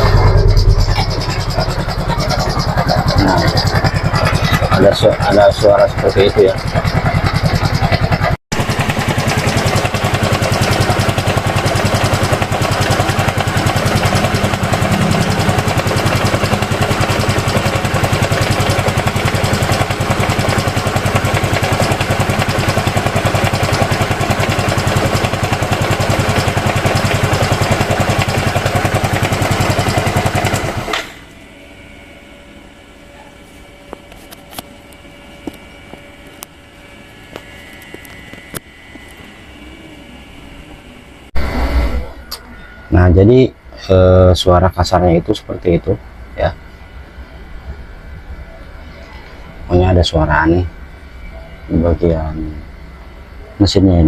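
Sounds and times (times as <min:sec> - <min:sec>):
rough scooter engine running: 0:00.0 - 0:31.3.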